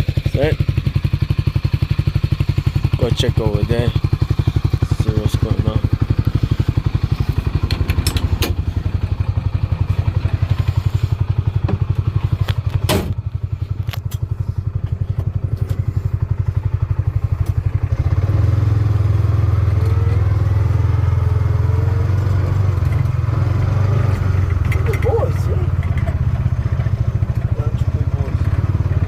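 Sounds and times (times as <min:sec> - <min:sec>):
buggy engine running: 0:00.0 - 0:29.0
knocks and rattles: 0:07.6 - 0:08.6, 0:11.6 - 0:14.2, 0:24.4 - 0:27.6.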